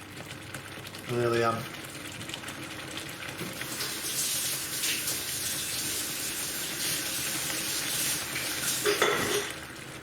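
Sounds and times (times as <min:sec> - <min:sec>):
kitchen tap running into sink: 0:03.4 - 0:09.6.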